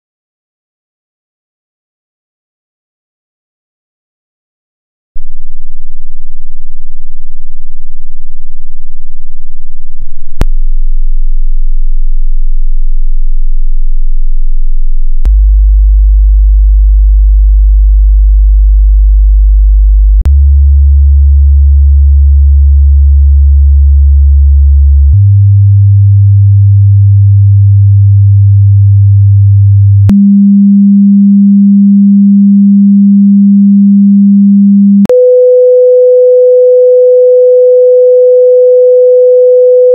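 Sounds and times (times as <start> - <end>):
steady pure sine tones: 5.2 - 15.4, 30.0 - 39.9.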